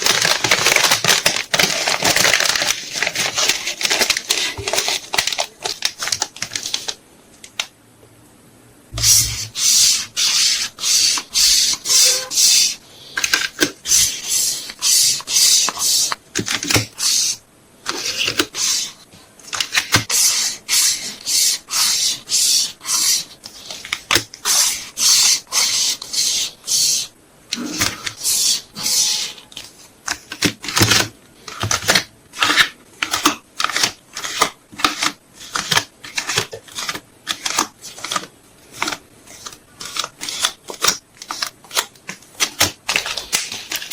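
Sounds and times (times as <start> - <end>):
packing materials crinkling: 0.0 - 7.0.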